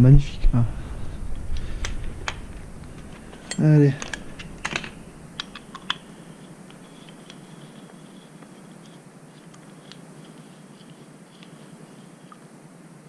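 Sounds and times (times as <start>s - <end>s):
low room hum: 0.0s - 13.0s
screw turned by hand: 1.8s - 9.0s
small metal hardware clicking: 3.0s - 6.1s.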